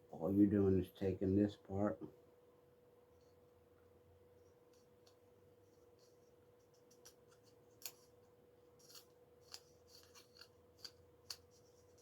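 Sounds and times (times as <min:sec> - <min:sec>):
faint steady hum: 0:00.0 - 0:12.0
small plastic part clicks and scratches: 0:06.0 - 0:12.0.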